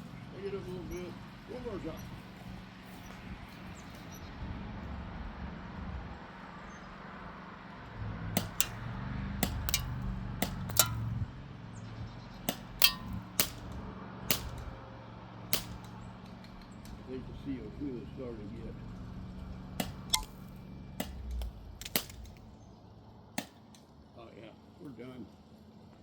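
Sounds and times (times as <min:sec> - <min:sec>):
bb gun shots: 0:08.4 - 0:11.2, 0:12.5 - 0:14.7, 0:15.5 - 0:16.0, 0:19.8 - 0:22.4.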